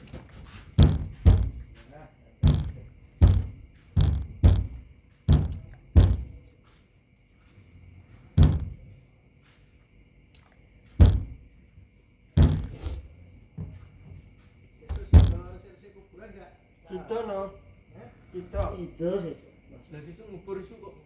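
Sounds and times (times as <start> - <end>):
dull thuds of hand blows: 0.7 - 1.8, 2.4 - 6.4, 8.4 - 8.9, 11.0 - 11.5, 12.4 - 13.0, 14.9 - 15.6.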